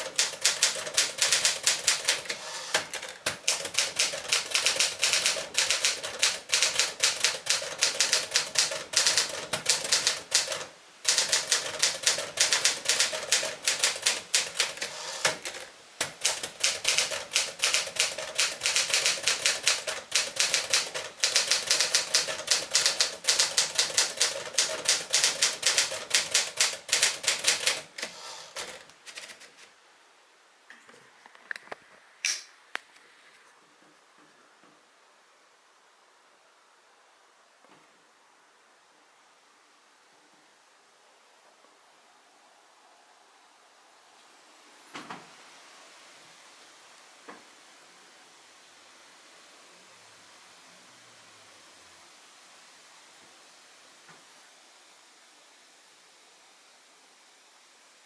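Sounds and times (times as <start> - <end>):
typewriter typing: 0.0 - 29.6.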